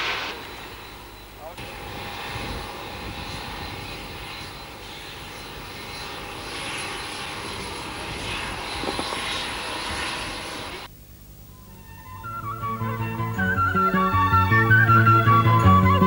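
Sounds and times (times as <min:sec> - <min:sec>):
airplane engine rush with whine: 0:00.0 - 0:10.9.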